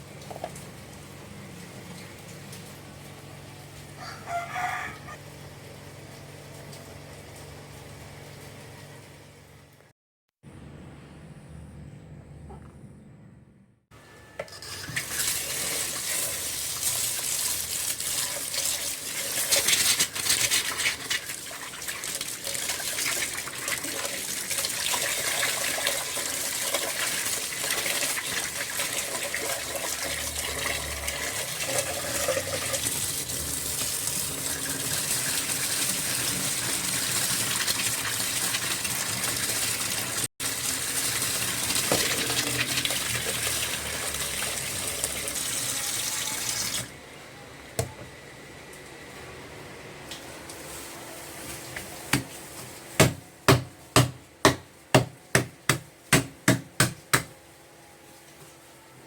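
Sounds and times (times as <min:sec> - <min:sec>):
tap water running and splashing: 0:14.6 - 0:46.9.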